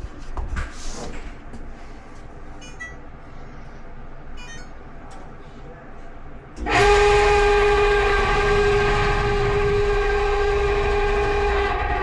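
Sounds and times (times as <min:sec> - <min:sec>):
clothes dryer drum rumbling: 0:06.6 - 0:12.0
high-pitched squeal: 0:06.6 - 0:12.0.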